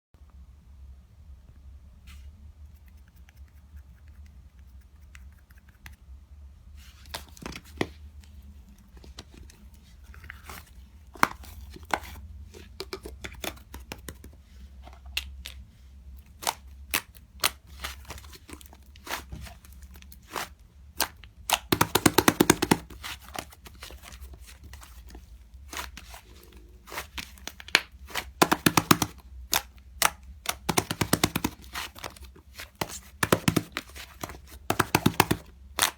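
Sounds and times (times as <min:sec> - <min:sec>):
slime squishing and crackling: 0:16.4 - 0:35.9.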